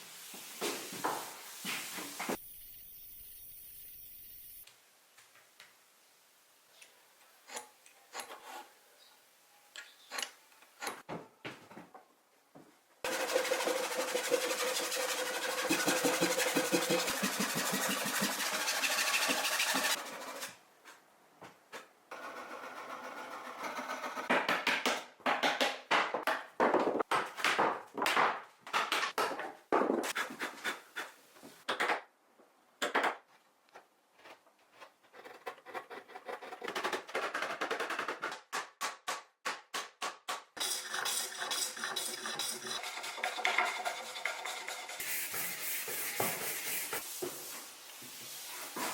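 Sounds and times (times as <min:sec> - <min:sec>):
repeated strokes on wood: 0:13.1 - 0:20.6.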